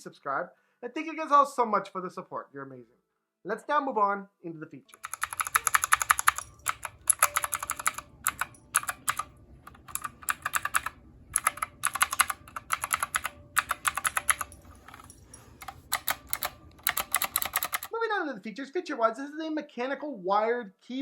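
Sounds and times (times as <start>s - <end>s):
mechanical keyboard typing: 5.0s - 18.0s.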